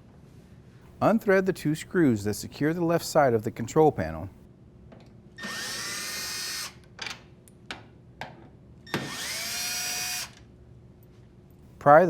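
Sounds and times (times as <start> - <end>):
cordless drill whining: 5.4 - 6.8, 8.9 - 10.4.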